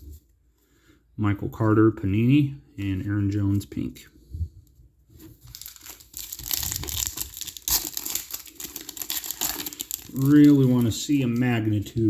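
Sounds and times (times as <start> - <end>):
wrapper tearing and crinkling: 5.4 - 11.4.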